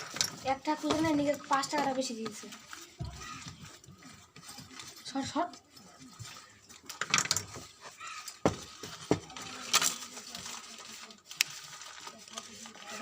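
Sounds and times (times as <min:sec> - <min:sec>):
small tools clicking and tapping: 0:00.0 - 0:10.6.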